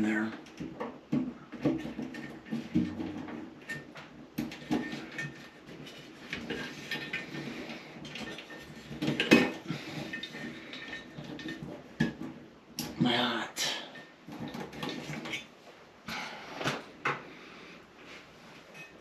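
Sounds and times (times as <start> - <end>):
wires and connectors clattering: 0.0 - 13.1, 13.8 - 15.6.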